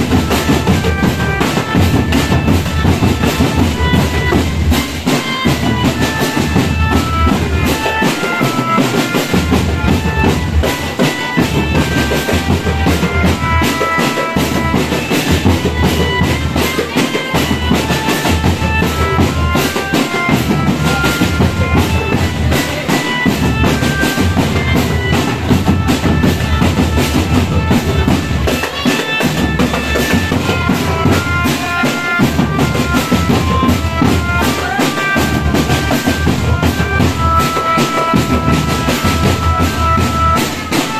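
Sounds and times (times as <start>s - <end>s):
reedy melody: 0.0s - 40.9s
snare and bass drum beats: 0.0s - 40.9s.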